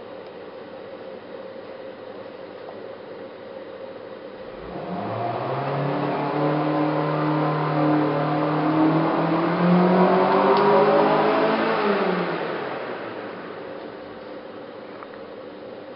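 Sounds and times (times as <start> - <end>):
milling machine motors whining: 4.5 - 14.1.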